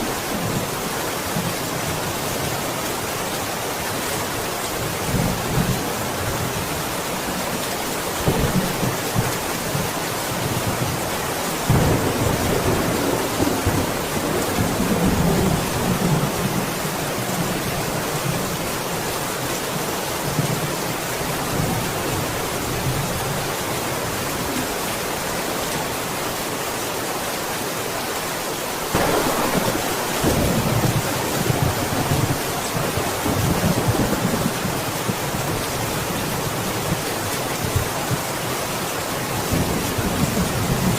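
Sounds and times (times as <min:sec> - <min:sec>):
heavy rain: 0:00.0 - 0:40.9
thunder rumbling: 0:11.6 - 0:16.8, 0:28.9 - 0:37.0.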